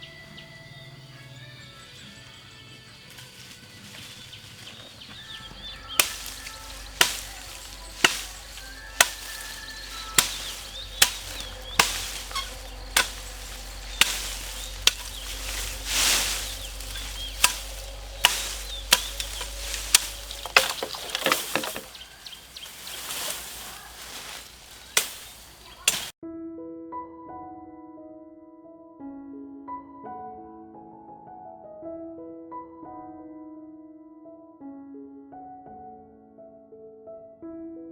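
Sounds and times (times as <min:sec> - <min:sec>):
hand tool chopping growth: 0:03.1 - 0:26.1.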